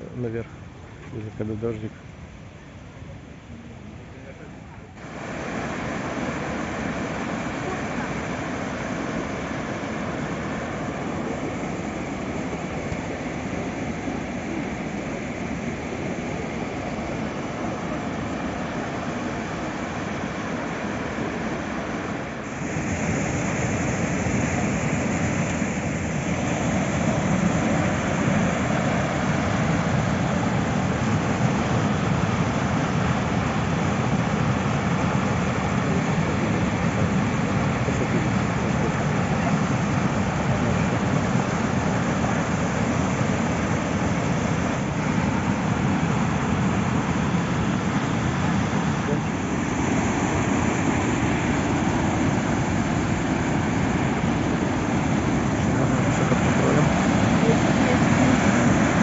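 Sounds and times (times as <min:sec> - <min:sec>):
waterfall rushing: 0:05.0 - 0:59.0.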